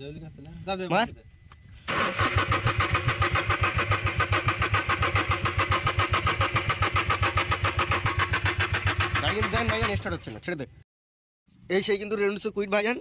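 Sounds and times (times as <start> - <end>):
engine cranking without starting: 1.8 - 10.3.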